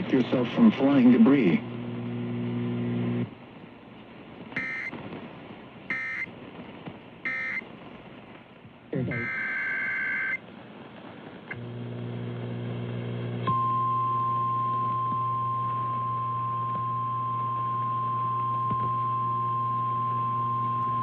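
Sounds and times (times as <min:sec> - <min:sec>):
low electrical buzz: 0:00.0 - 0:03.4, 0:11.5 - 0:21.0
steady alarm tone: 0:04.6 - 0:04.9, 0:05.9 - 0:06.3, 0:07.3 - 0:07.6, 0:09.1 - 0:10.4.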